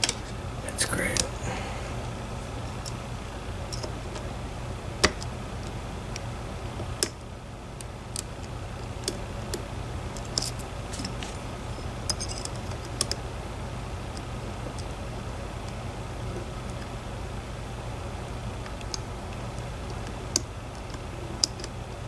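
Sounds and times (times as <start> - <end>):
steady low hum: 0.0 - 5.1.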